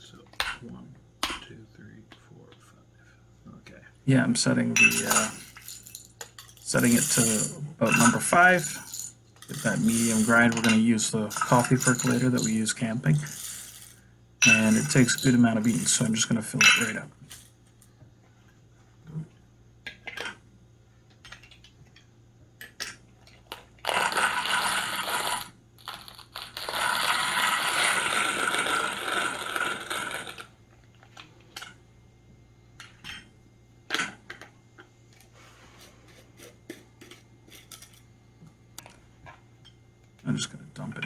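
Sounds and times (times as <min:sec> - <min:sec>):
grinder clicks and clinks: 0:04.8 - 0:17.8, 0:22.6 - 0:31.8, 0:36.6 - 0:38.1
coffee beans pouring into grinder: 0:04.9 - 0:16.2, 0:23.5 - 0:30.5.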